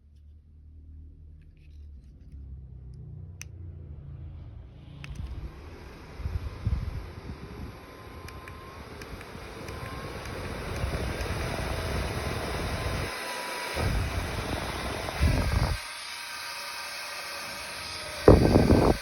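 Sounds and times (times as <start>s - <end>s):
airflow buffeting microphone: 4.2s - 15.8s, 18.2s - 19.0s
small fan whirring: 5.0s - 19.0s.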